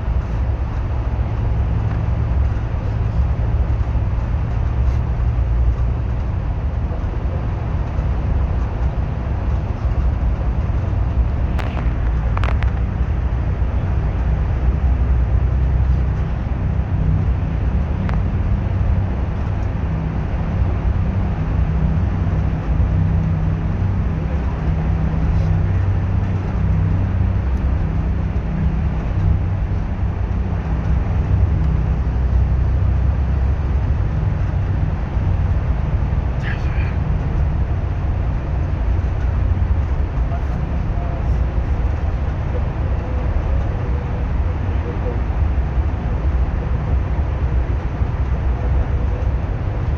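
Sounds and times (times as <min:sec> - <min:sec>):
bus engine drone: 0:00.0 - 0:49.9
road and tyre noise: 0:00.0 - 0:49.9.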